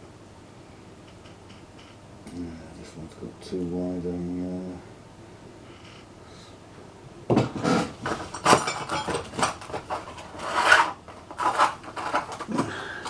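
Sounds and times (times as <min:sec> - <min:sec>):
hand tools clinking and scraping: 0:07.5 - 0:13.0.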